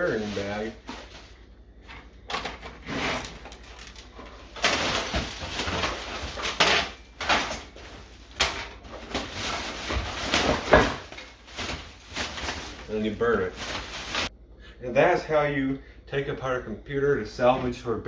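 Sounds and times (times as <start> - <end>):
bag rustling and crinkling: 0.0 - 14.3.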